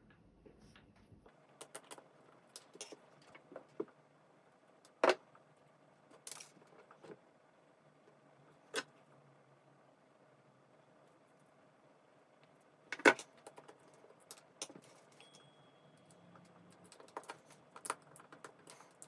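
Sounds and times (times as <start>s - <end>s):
clicks and rustles of wiring: 12.4s - 15.4s, 16.0s - 19.0s.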